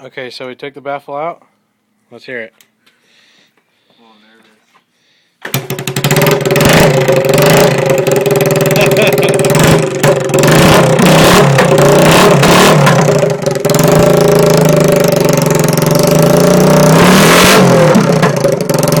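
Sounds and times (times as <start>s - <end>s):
quad engine revving: 5.4s - 19.0s.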